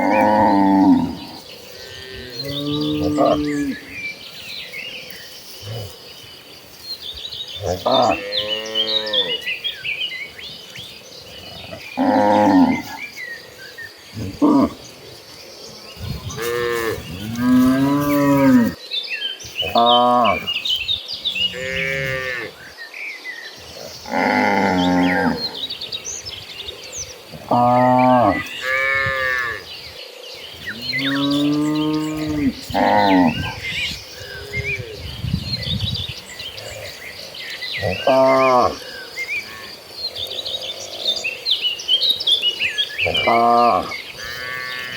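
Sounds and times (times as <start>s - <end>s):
cow mooing: 0.0s - 3.9s, 7.6s - 9.4s, 11.6s - 13.0s, 16.2s - 18.8s, 21.4s - 22.6s, 24.0s - 25.5s, 30.8s - 33.6s
birds chirping: 0.0s - 44.9s.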